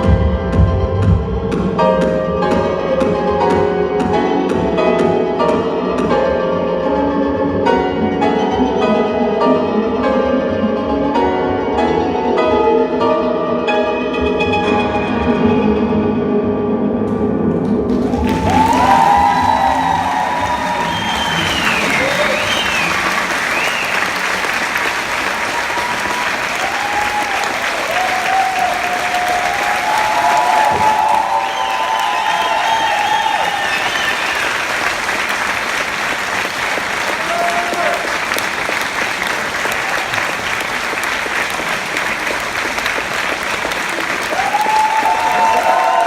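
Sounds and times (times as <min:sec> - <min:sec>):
audience applauding: 0:17.6 - 0:46.0
cheering voices: 0:17.9 - 0:42.8, 0:43.4 - 0:46.0
crowd calling out: 0:18.0 - 0:24.0, 0:25.4 - 0:34.7, 0:44.4 - 0:46.0.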